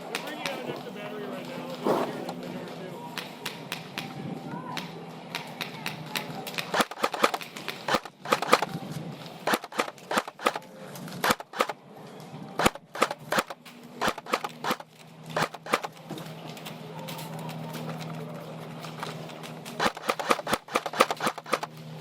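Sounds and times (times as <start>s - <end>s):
airsoft guns firing sharp clicks: 3.2s - 11.8s, 12.6s - 16.0s, 18.9s - 21.9s.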